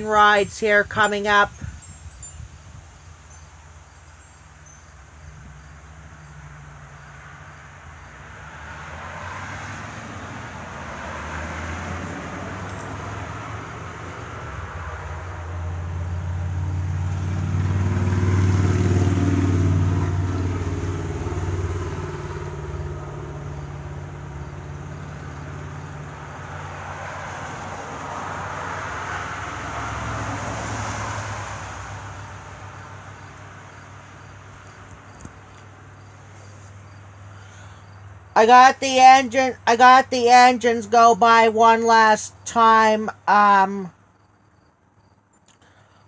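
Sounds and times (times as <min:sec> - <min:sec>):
passing vehicle engine drone: 0:05.9 - 0:34.2.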